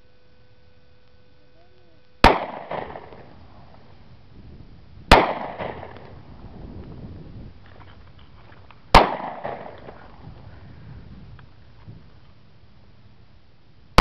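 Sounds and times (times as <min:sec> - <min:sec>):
pistol shots echoing: 0:02.2 - 0:03.4, 0:05.1 - 0:06.2, 0:08.9 - 0:10.0.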